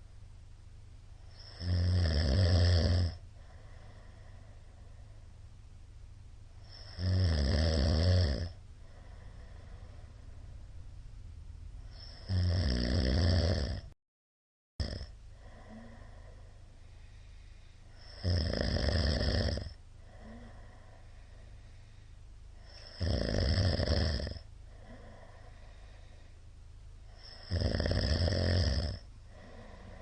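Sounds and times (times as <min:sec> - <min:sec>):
man snoring loudly: 0:01.4 - 0:03.2, 0:06.6 - 0:09.0, 0:11.9 - 0:14.0, 0:14.8 - 0:16.1, 0:18.0 - 0:20.4, 0:22.6 - 0:25.2, 0:27.2 - 0:29.9
quiet breathing: 0:02.6 - 0:07.2, 0:07.9 - 0:12.4, 0:15.0 - 0:30.0.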